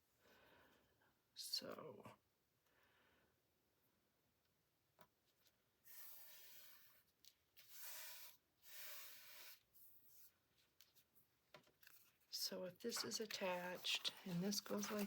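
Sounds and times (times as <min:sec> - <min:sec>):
paper pages rustling: 0:10.1 - 0:15.0.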